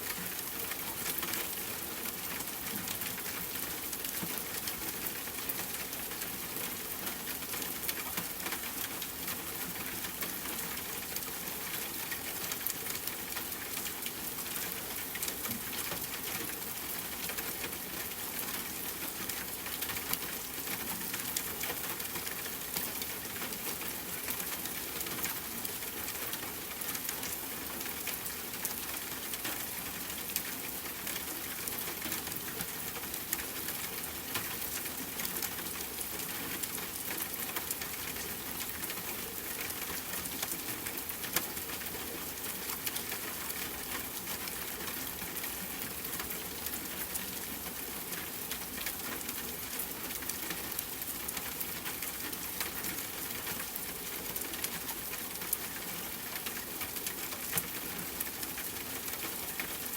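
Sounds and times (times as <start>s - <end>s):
rain on tent fabric: 0.0s - 59.9s.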